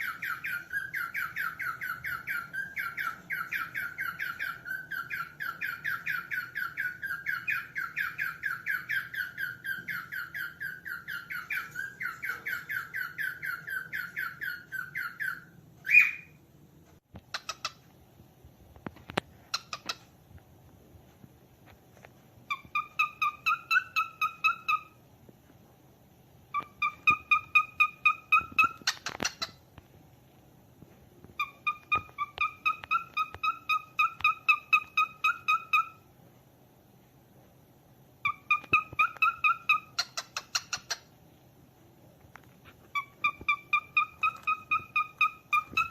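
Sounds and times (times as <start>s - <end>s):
cockatiel chirping: 0.0s - 16.4s, 17.2s - 17.9s, 19.4s - 20.2s, 22.4s - 25.0s, 26.5s - 29.6s, 31.3s - 36.1s, 38.2s - 41.1s, 42.6s - 45.9s.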